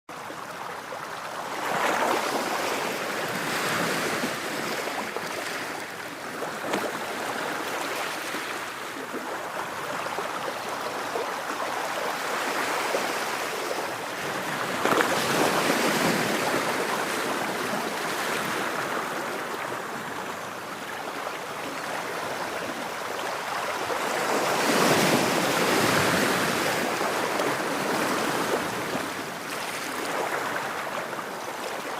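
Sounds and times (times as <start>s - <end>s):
ocean waves breaking on beach: 0.1s - 31.9s.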